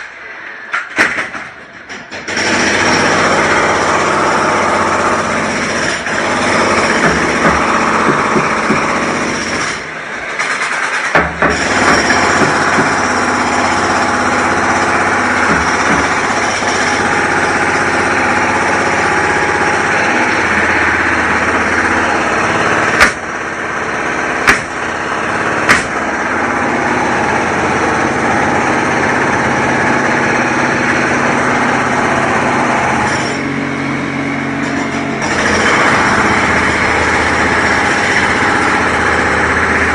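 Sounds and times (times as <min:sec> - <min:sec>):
din of machinery: 0:00.0 - 0:39.9
motor running: 0:02.9 - 0:09.8, 0:11.5 - 0:34.0, 0:34.7 - 0:39.9
sharp bangs: 0:05.9 - 0:26.7.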